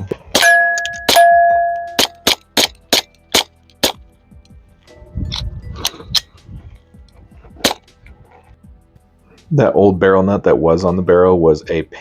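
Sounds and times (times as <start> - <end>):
suppressed pistol shots: 0.3 - 4.0.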